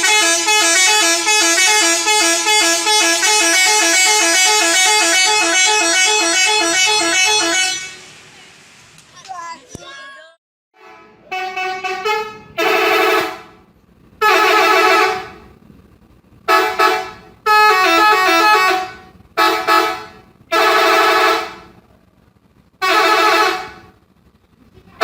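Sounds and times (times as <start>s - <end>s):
multi-tone air horn blasts: 0.0s - 8.3s, 10.8s - 15.4s, 16.5s - 21.7s, 22.8s - 24.0s.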